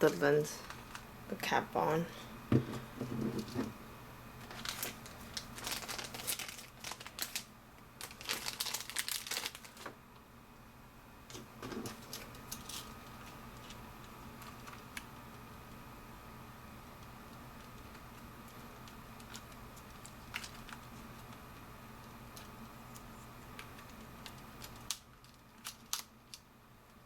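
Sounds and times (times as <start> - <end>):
plastic packaging crinkling: 0.0 - 1.1, 4.4 - 9.9, 11.3 - 15.1, 17.6 - 21.4, 22.2 - 26.4
faint steady hum: 0.0 - 27.0
soft knock: 2.5 - 3.4.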